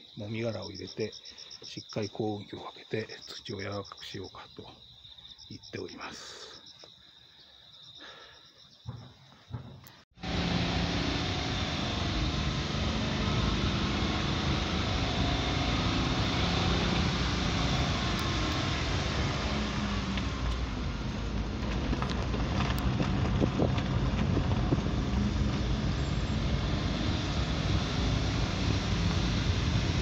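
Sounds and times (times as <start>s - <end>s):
engine rumbling: 9.0s - 30.0s.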